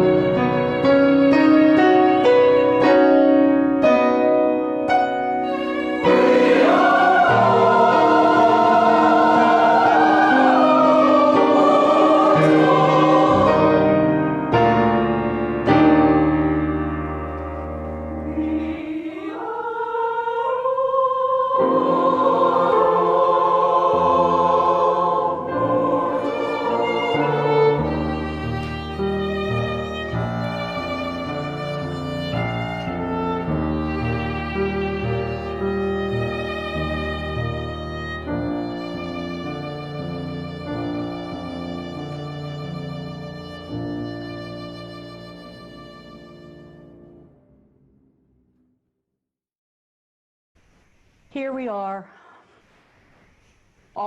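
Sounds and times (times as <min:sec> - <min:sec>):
instrumental accompaniment: 0:00.0 - 0:19.3, 0:21.6 - 0:47.6
choir singing with vibrato: 0:05.4 - 0:14.8, 0:17.6 - 0:39.4.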